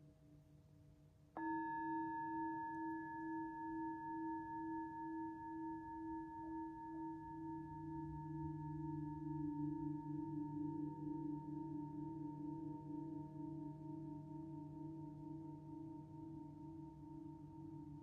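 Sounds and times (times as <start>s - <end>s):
singing bowl ringing: 1.4s - 15.4s.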